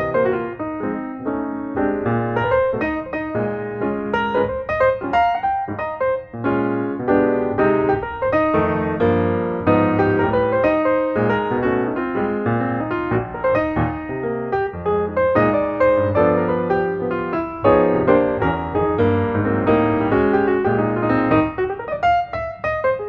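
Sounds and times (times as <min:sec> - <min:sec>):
piano music: 0:00.0 - 0:23.0.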